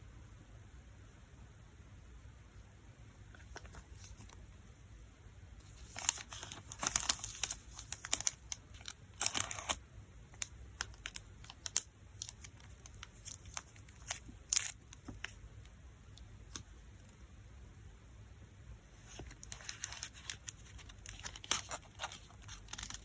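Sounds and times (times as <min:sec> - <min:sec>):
plastic packaging crinkling: 0:05.6 - 0:09.8, 0:10.4 - 0:15.4, 0:19.1 - 0:23.0.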